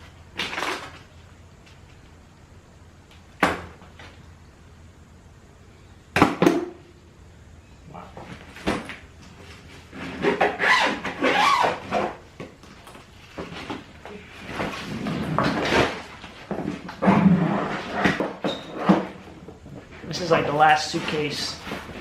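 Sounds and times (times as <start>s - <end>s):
rough scraping and rubbing: 9.5s - 12.2s, 14.3s - 19.1s.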